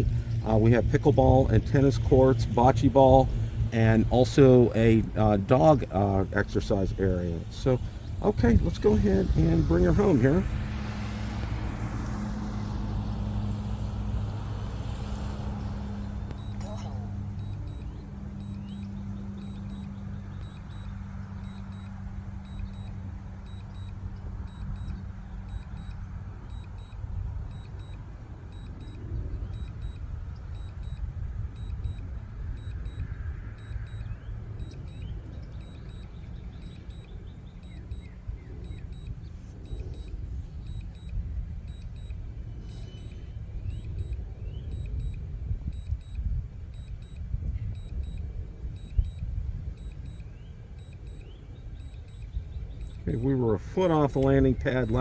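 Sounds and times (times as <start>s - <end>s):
low hum: 0.0s - 55.0s
steady low rumble: 0.0s - 55.0s
faint high beep: 15.8s - 55.0s.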